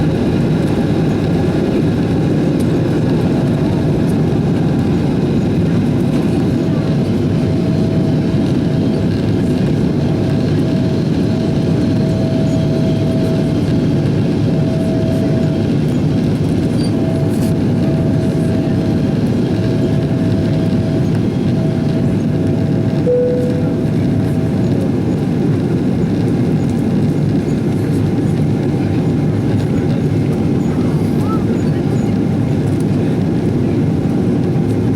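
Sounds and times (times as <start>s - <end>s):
jet engines and airflow roar: 0.0s - 34.9s
faint steady whine: 23.0s - 24.1s.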